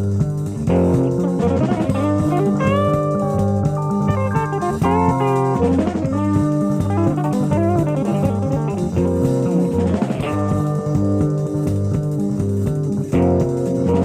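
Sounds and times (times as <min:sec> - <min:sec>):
drum kit: 0:00.0 - 0:14.0
electric bass: 0:00.0 - 0:14.0
electric guitar melodic lines: 0:00.8 - 0:11.6.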